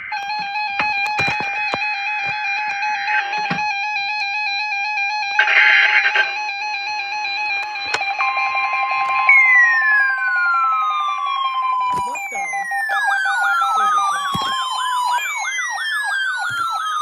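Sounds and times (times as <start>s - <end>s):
siren-style alarm: 0.0s - 17.0s
steady warning alarm tone: 0.0s - 17.0s
weather radio alert beeps: 5.4s - 6.5s, 7.3s - 17.0s
digital header tones: 7.4s - 17.0s.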